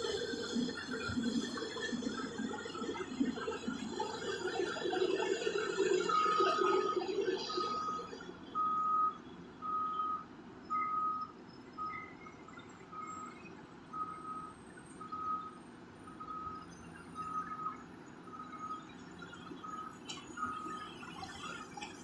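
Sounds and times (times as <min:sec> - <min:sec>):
reversing alarm beeping: 0:00.0 - 0:22.0.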